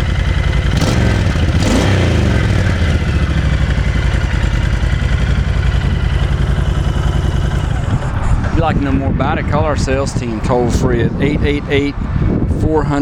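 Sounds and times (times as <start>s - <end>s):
motorcycle engine idling: 0.0s - 9.0s.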